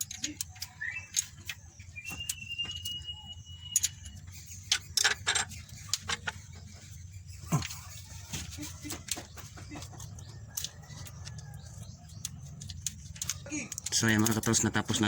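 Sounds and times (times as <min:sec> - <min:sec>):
hand tools clicking on metal: 0:00.0 - 0:03.0, 0:03.6 - 0:06.4, 0:08.5 - 0:15.0
thin steady whistle: 0:01.8 - 0:04.3.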